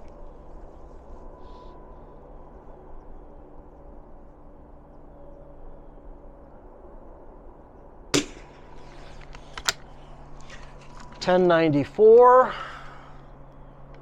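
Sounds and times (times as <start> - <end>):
rifle shot crack: 8.2 - 10.2.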